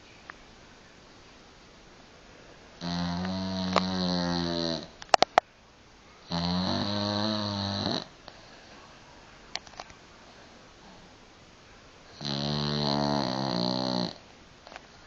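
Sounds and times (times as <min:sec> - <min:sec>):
dog snoring: 0:02.8 - 0:04.9, 0:06.3 - 0:08.1, 0:12.1 - 0:14.2.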